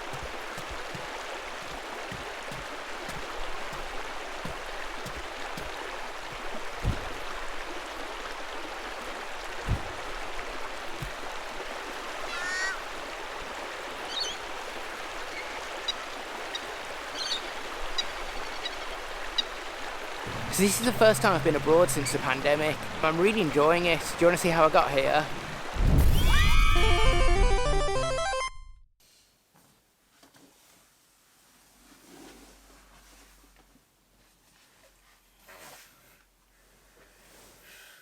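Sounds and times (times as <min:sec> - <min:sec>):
running water rushing: 0:00.0 - 0:27.2
low thumps: 0:02.1 - 0:07.5, 0:09.6 - 0:10.4.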